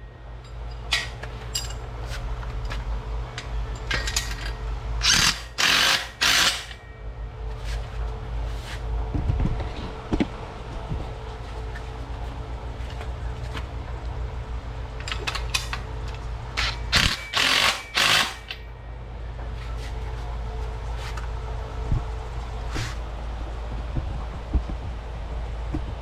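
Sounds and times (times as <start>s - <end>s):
rapid mechanical rattling: 16.6s - 18.5s.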